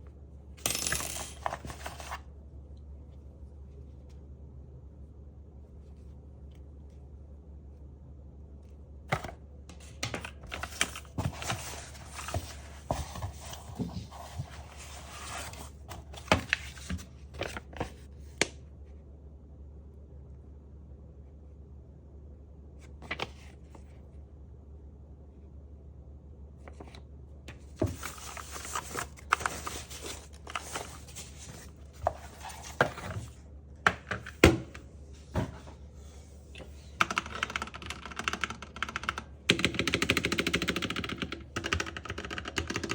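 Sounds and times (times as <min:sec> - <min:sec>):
keyboard being handled: 0:00.6 - 0:02.2, 0:09.1 - 0:18.1, 0:26.7 - 0:35.8
packaging rustling and crinkling: 0:27.6 - 0:33.4.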